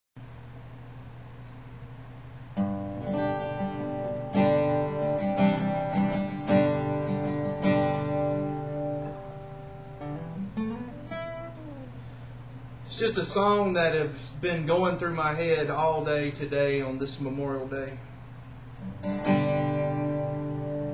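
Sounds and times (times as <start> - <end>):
acoustic guitar strummed: 2.5 - 12.2, 18.8 - 20.9.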